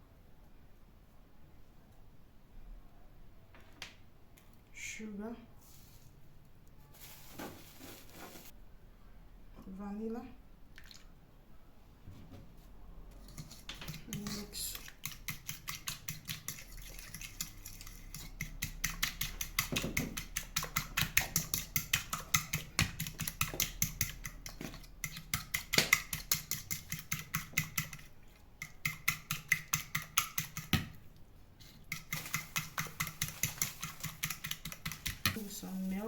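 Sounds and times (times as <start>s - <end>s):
utensil beating in a bowl: 13.3s - 36.0s.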